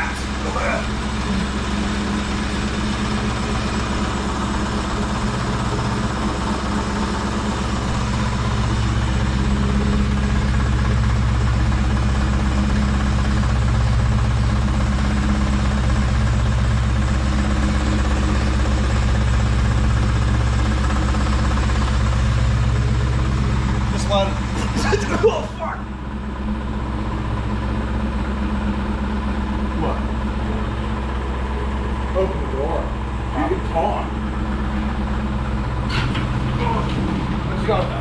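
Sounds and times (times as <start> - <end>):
car engine idling: 0.0 - 38.0.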